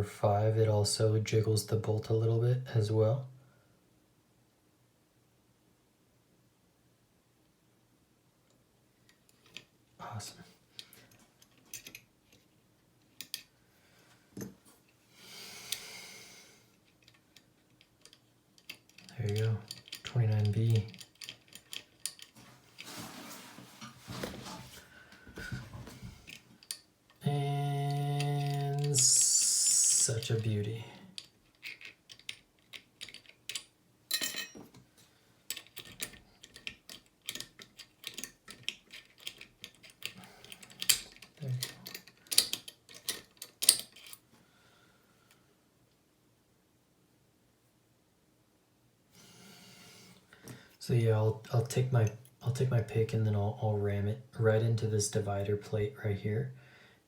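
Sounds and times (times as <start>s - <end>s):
small metallic clicks: 16.8s - 22.4s, 31.2s - 34.5s, 35.5s - 44.2s.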